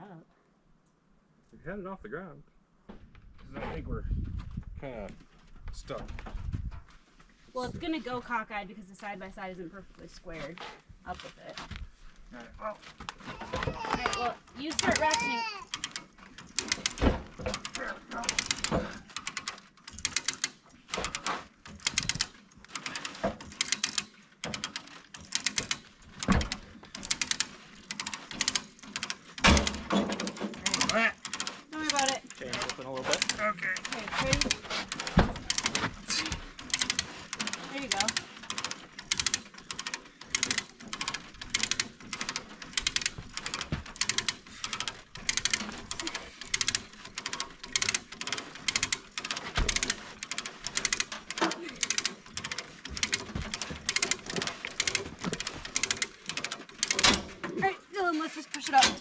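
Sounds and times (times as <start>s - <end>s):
hand ratchet clicking: 13.1s - 57.5s.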